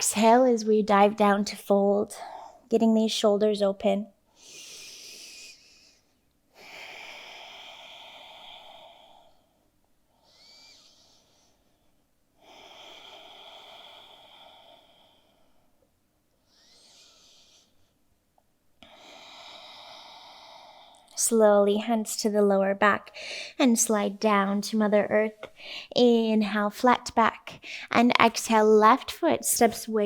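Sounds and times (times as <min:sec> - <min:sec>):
person breathing deeply: 0:04.4 - 0:11.8, 0:12.4 - 0:15.8, 0:16.4 - 0:17.9, 0:18.8 - 0:21.1, 0:23.1 - 0:23.6, 0:25.5 - 0:26.0.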